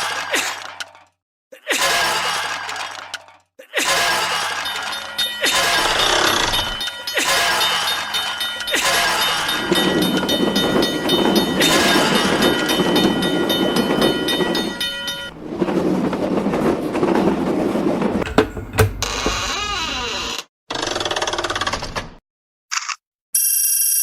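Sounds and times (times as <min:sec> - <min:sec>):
crossing warning bell: 0:04.2 - 0:19.4
train cars rumbling and clattering: 0:04.3 - 0:19.9.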